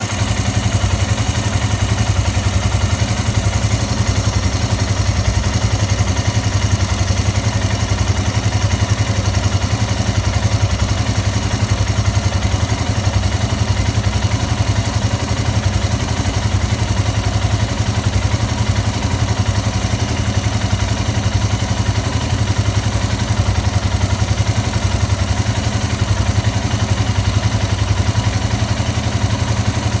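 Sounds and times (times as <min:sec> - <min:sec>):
motorcycle engine idling: 0:00.0 - 0:30.0.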